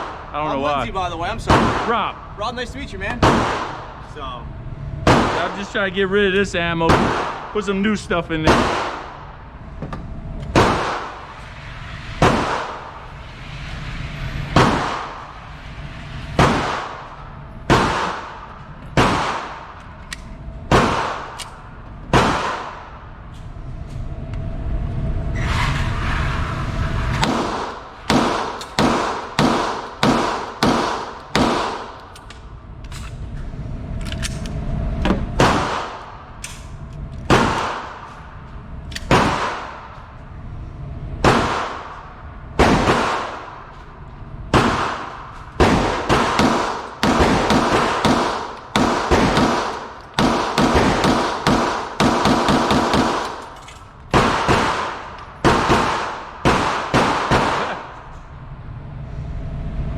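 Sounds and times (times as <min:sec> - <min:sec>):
pistol shots echoing: 0:03.2 - 0:04.0, 0:08.4 - 0:09.2, 0:17.7 - 0:19.8, 0:22.1 - 0:22.9, 0:27.2 - 0:32.1, 0:42.6 - 0:43.6, 0:44.5 - 0:58.1.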